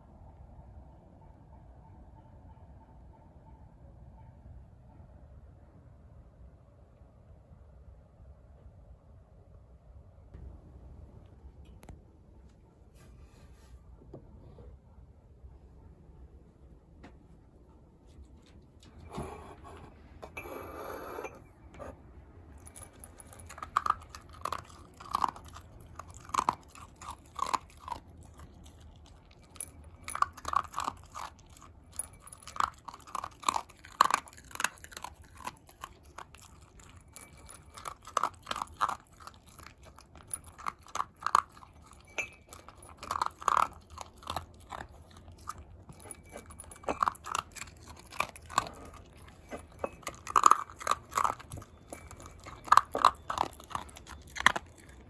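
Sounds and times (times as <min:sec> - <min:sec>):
dog crunching dry food: 0:22.5 - 0:55.0.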